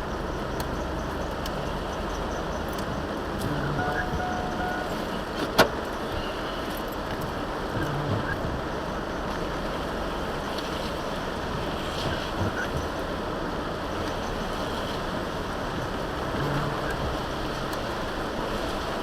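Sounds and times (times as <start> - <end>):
road and rain noise in truck cab: 0.0 - 19.0
faint electronic tone: 3.4 - 5.2.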